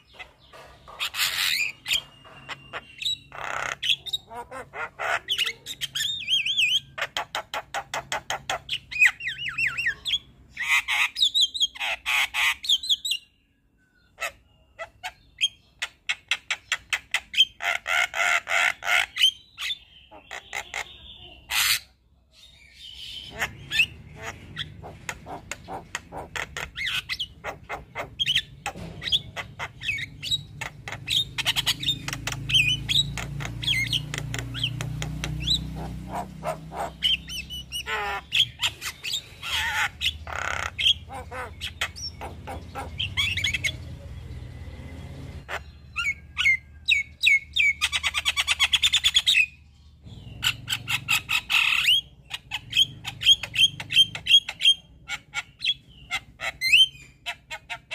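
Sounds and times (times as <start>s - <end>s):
myna chattering and whistling: 0.0s - 10.1s.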